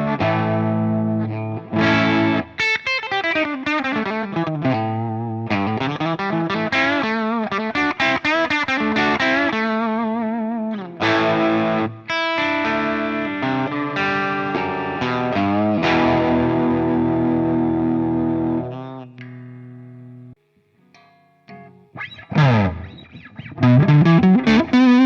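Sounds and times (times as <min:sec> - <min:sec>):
overdriven electric guitar lead: 0:00.0 - 0:20.3, 0:21.0 - 0:25.0.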